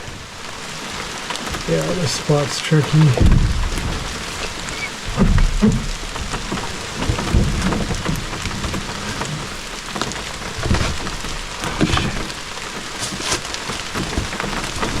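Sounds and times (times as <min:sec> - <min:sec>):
rain pattering: 0:00.0 - 0:15.0
dull low thumps: 0:03.1 - 0:12.2.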